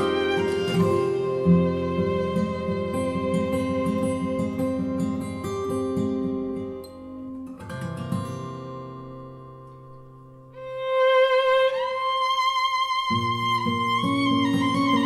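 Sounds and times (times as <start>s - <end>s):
violin melody: 0.0s - 5.5s, 10.5s - 15.0s.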